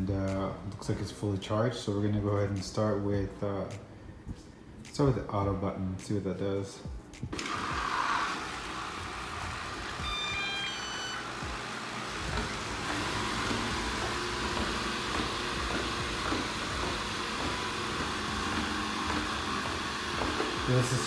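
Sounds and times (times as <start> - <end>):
robot vacuum motor and brushes: 7.3 - 21.0
electronic beep tune: 10.0 - 11.2.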